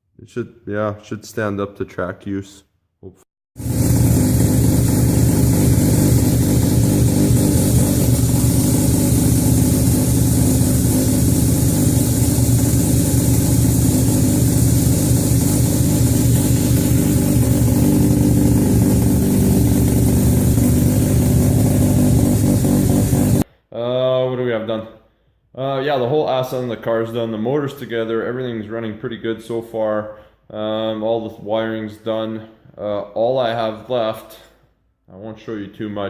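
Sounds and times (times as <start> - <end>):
rotary engine running: 3.6 - 23.4.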